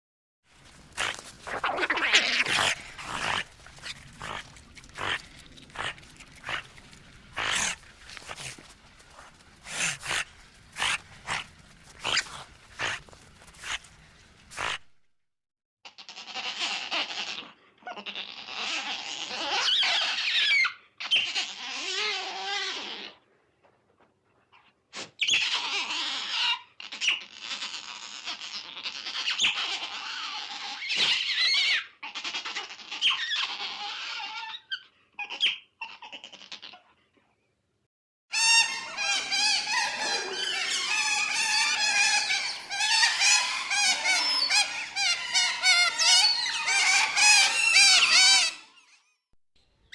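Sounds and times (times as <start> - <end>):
otters squeaking and chirping: 0.6 - 13.9, 38.4 - 49.2.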